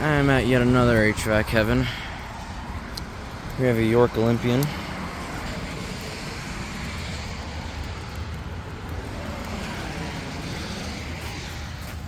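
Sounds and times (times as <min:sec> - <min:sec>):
traffic rumble and hiss: 0:00.0 - 0:12.0.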